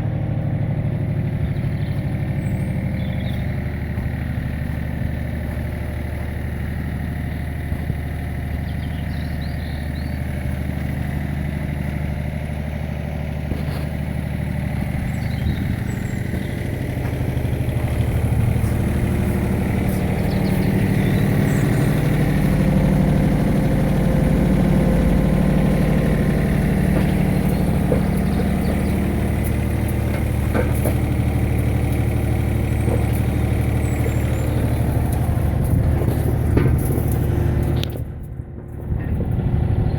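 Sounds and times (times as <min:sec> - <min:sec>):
digger engine running: 0:00.0 - 0:39.9.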